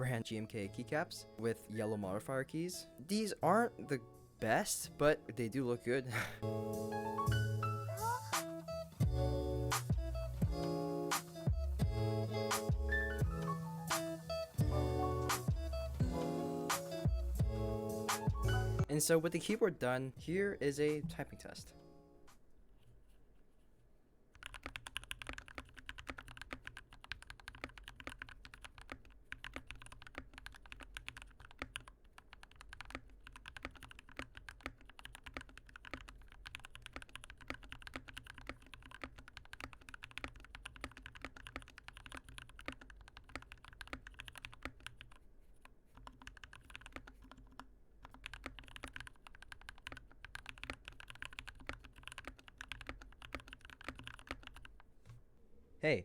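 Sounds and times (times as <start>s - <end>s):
mechanical keyboard typing: 24.4s - 45.2s, 46.0s - 54.8s.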